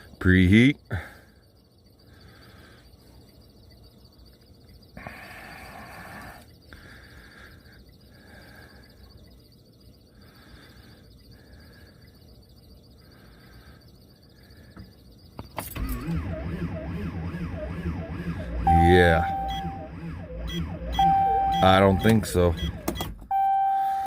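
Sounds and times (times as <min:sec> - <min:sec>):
diesel engine cranking: 0:15.6 - 0:23.4.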